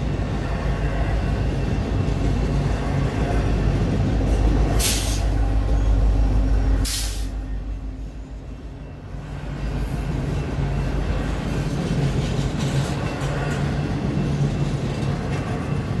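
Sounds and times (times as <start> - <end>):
diesel locomotive engine rumble: 0.0 - 16.0
burst of hiss: 4.8 - 5.3, 6.8 - 7.4.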